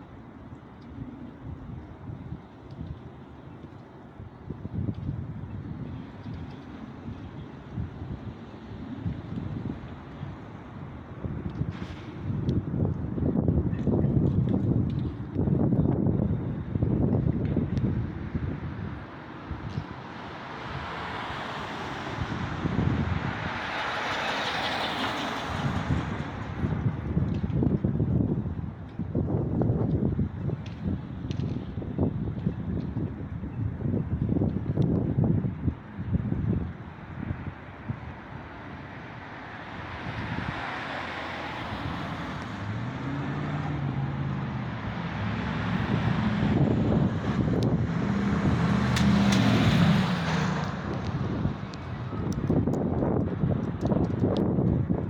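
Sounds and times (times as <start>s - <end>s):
vehicle road noise: 0.0s - 55.0s
wind buffeting microphone: 0.0s - 55.0s
engine hum: 34.4s - 55.0s
vehicle passing by: 39.0s - 52.7s.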